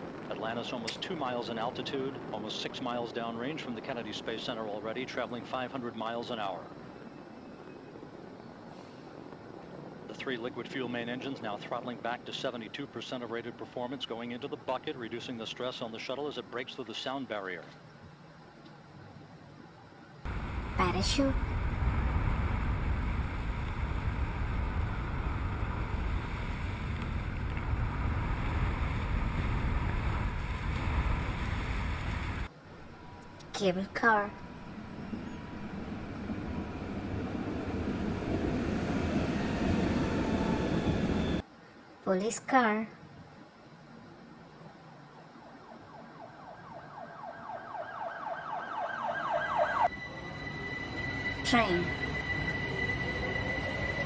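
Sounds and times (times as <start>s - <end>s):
wind rushing over microphone: 20.3s - 33.4s, 34.4s - 41.4s
police siren yelping: 45.7s - 50.0s.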